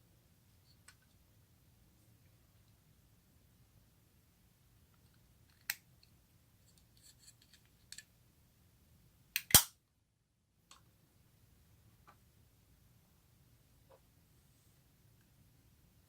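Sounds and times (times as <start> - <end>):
sharp snaps: 9.4 - 9.8.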